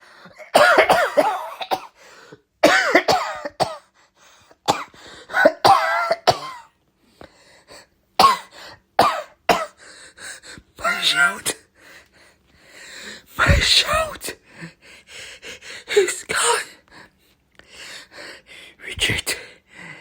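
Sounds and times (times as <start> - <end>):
person coughing: 0.3 - 2.0, 2.6 - 3.9, 4.7 - 6.7, 8.2 - 9.8.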